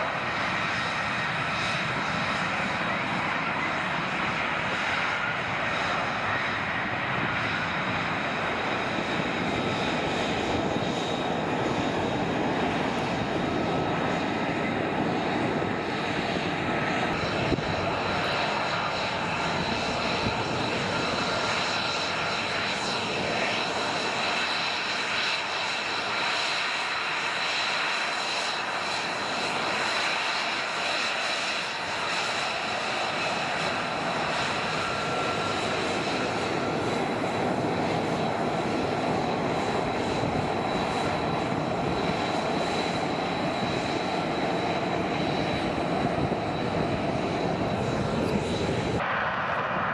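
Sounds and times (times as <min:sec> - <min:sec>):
jet engine running: 0:00.0 - 0:49.9
high-pitched whine: 0:45.2 - 0:49.9.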